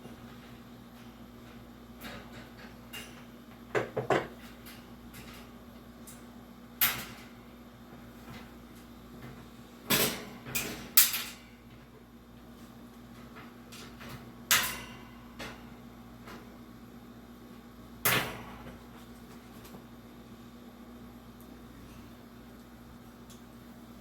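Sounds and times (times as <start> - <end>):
metal fan parts knocking and clattering: 0.0 - 6.2, 9.9 - 11.8, 13.1 - 16.5.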